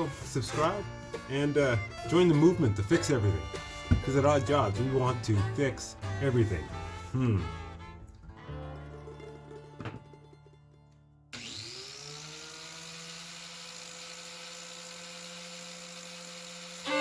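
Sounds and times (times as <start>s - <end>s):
angle grinder motor whine: 11.4s - 17.0s.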